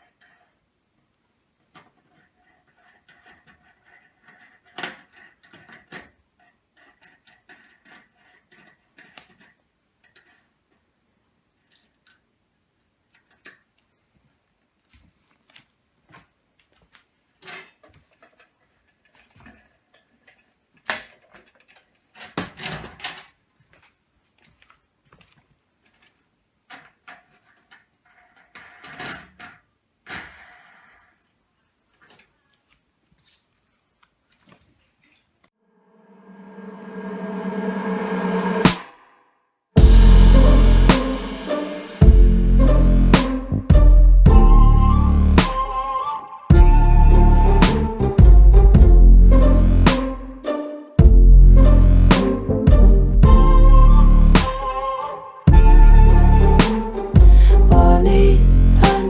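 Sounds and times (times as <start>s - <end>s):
screws and hardware rattling: 1.7s - 10.8s, 25.8s - 32.4s.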